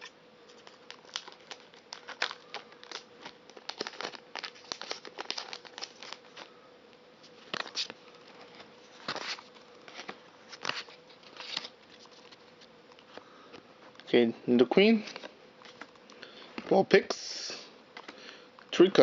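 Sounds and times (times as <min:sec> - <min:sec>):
foil wrapper crinkling: 0:00.0 - 0:06.6, 0:07.2 - 0:13.1.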